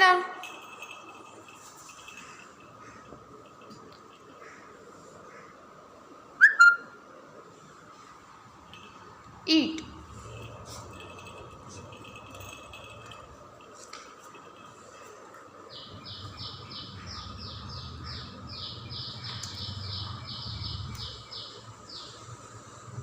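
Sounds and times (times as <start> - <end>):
bird calling high notes: 6.4 - 7.0.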